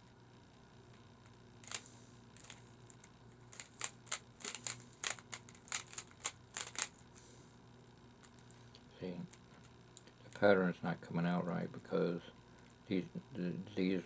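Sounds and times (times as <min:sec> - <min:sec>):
rubik's cube plastic clicks: 0:01.6 - 0:07.0.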